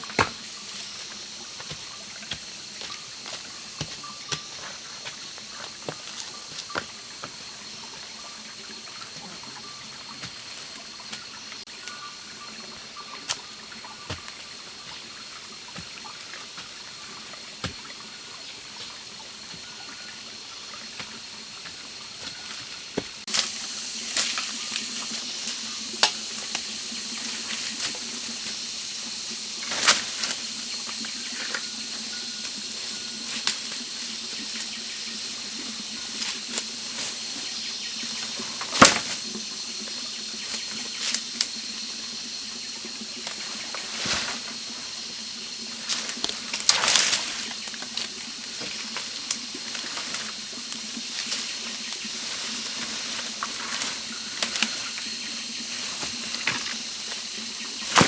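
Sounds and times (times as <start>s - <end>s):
water trickling: 0.1s - 57.9s.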